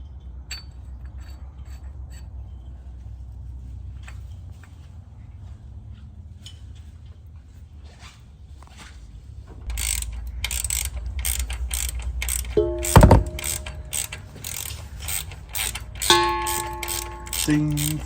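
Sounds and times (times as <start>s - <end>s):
low hum: 9.7s - 17.5s
ratchet wrench clicking: 9.7s - 18.0s
metallic clang: 9.8s - 18.0s.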